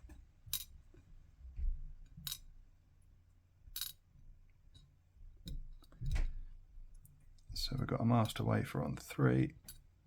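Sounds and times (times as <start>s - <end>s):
lock pins clicking and clinking: 0.5s - 0.8s, 2.2s - 2.5s, 3.7s - 4.1s.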